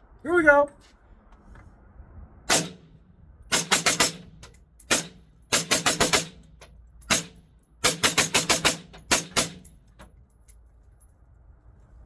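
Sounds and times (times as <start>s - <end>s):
suppressed gunshots: 2.5s - 2.8s, 3.5s - 6.5s, 7.1s - 9.6s.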